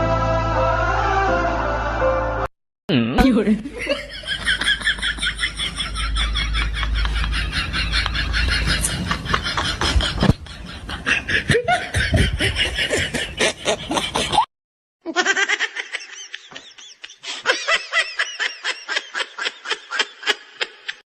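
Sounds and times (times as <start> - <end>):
person laughing: 3.6 - 14.5, 15.1 - 21.0.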